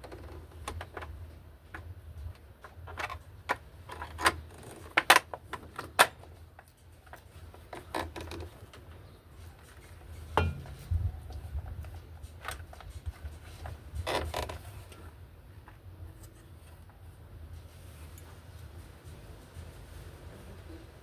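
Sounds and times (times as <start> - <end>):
washing machine parts creaking: 7.2 - 8.7, 11.7 - 15.0.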